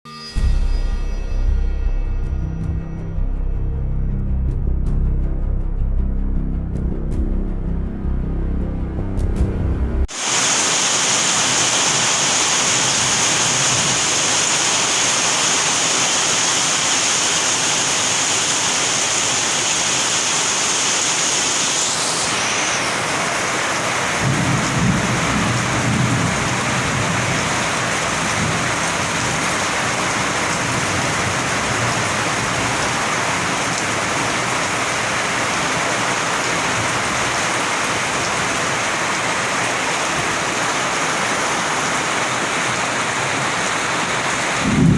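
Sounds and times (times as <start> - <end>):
heavy rain hissing: 10.1 - 44.9.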